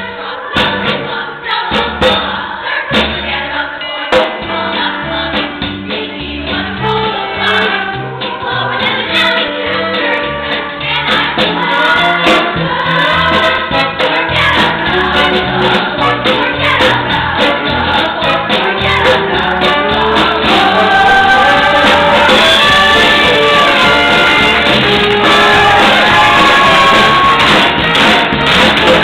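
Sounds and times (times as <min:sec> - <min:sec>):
choir singing: 0:00.0 - 0:29.0
regular music beat: 0:00.1 - 0:29.0.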